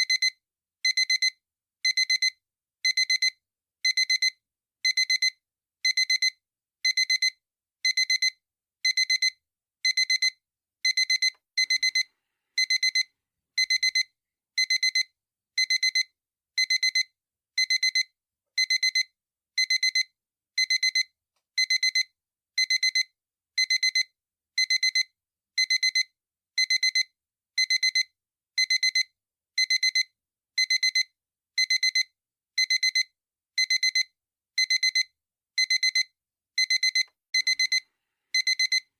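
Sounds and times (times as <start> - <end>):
alarm clock beeping: 6.9 - 15.0, 15.6 - 16.0, 16.6 - 17.0, 17.6 - 18.0, 19.6 - 20.0, 21.6 - 22.0, 29.6 - 30.0, 31.6 - 32.0, 33.6 - 34.0, 34.6 - 35.0, 35.6 - 36.0, 36.6 - 37.8, 38.4 - 38.9.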